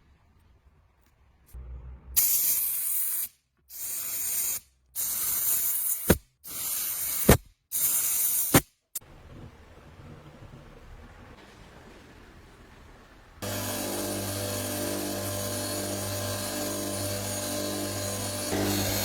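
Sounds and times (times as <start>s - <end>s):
aerosol spray can spraying: 2.2s - 8.8s.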